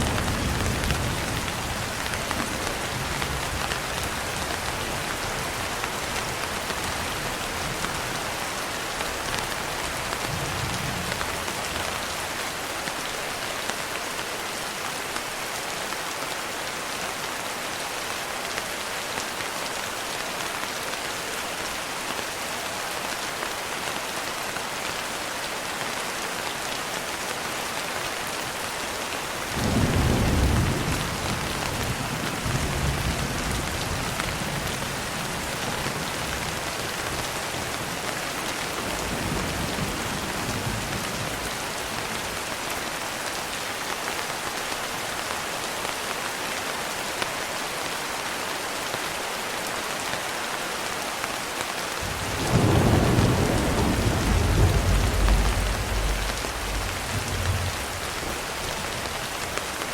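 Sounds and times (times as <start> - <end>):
steady rain: 0.0 - 59.9
distant thunder: 52.0 - 59.6.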